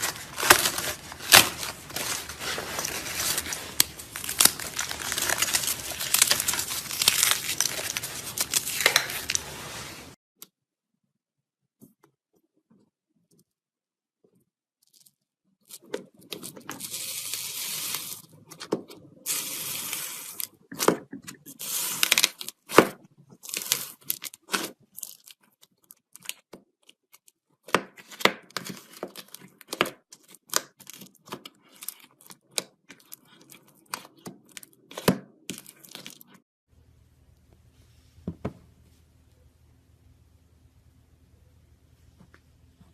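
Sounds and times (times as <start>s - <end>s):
slime crust crackling: 0.0s - 10.2s.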